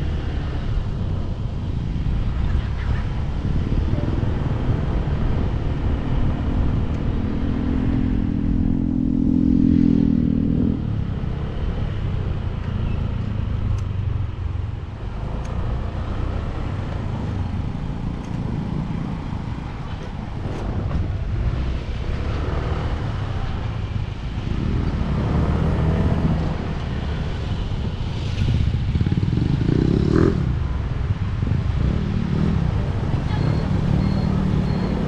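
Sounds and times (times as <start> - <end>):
motorcycle engine rumbling: 0.0 - 35.0
wind on microphone: 22.7 - 35.0.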